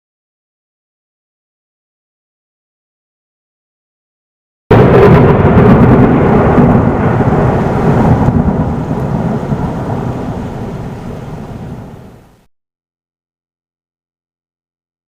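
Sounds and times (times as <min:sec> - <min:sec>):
rolling thunderclap: 0:04.7 - 0:12.4.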